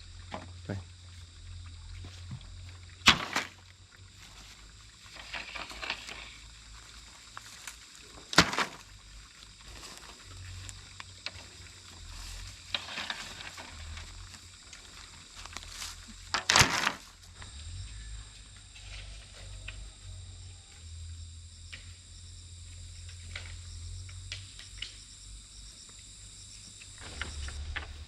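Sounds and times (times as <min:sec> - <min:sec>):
soft rustle: 0:04.0 - 0:17.5.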